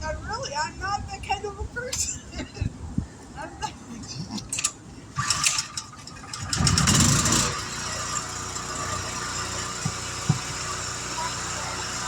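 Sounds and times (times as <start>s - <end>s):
vehicle engine cranking and idling: 4.5s - 12.0s.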